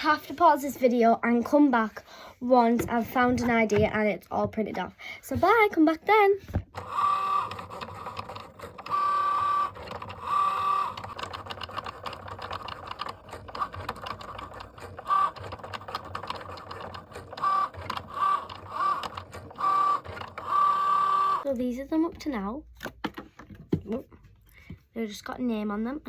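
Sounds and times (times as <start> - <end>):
cutting machine motors whining: 6.7 - 21.4
steady mechanical ticking: 6.7 - 21.5.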